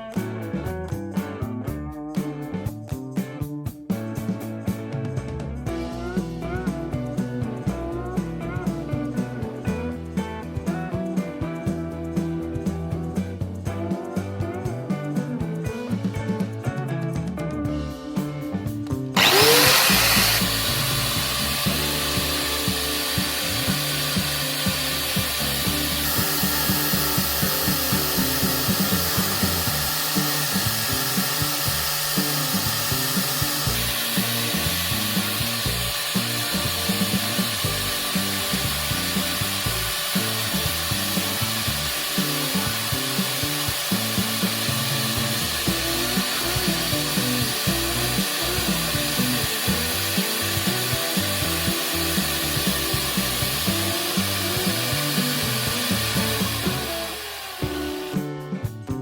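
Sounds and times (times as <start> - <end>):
power tool motor whine: 19.2 - 58.4
scraping grinding noise: 19.2 - 58.4.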